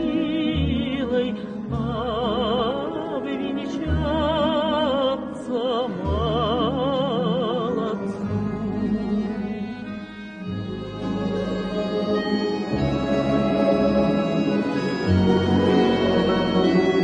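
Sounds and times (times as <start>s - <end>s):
woman singing with vibrato: 0.0s - 8.6s
instrumental accompaniment with bass: 0.0s - 17.0s.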